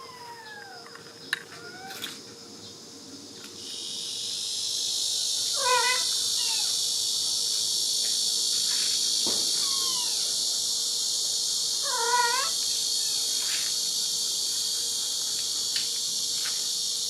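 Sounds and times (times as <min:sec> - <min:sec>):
high-pitched insect chorus: 0:00.0 - 0:17.0
kitten meowing: 0:05.6 - 0:06.7, 0:09.6 - 0:10.3, 0:11.8 - 0:13.2.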